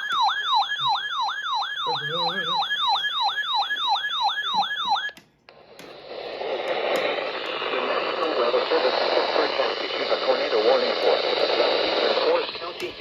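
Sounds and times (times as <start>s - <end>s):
electronic siren alarm: 0.0s - 5.2s.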